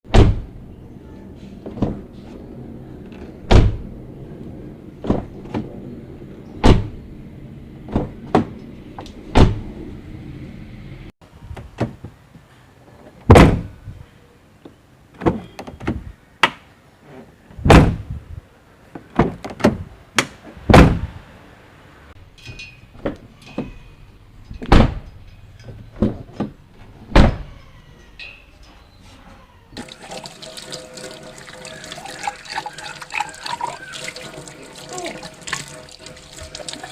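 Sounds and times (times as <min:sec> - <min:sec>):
car doors slamming: 0:00.1 - 0:00.5, 0:06.6 - 0:07.0, 0:09.3 - 0:09.6.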